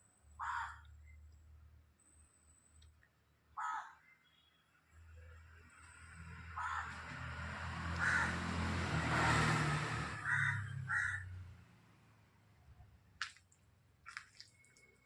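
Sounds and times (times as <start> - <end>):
crow cawing: 0.4 - 0.9, 3.6 - 4.0, 6.6 - 7.1, 8.0 - 8.4, 10.2 - 11.3.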